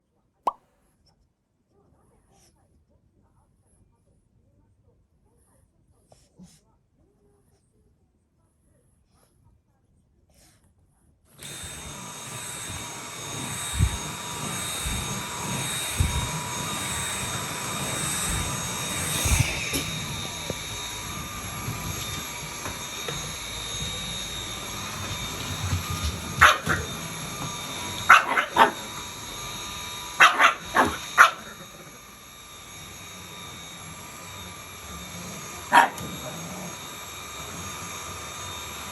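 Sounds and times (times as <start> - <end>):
small dog barking: 26.3 - 27.2, 27.9 - 29.0, 30.1 - 31.8, 35.6 - 36.6.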